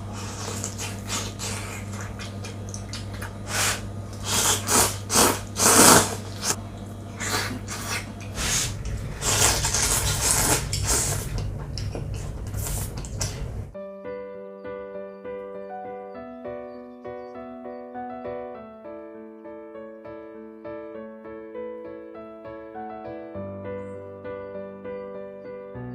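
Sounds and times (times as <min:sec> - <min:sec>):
steady low hum: 0:00.0 - 0:13.8.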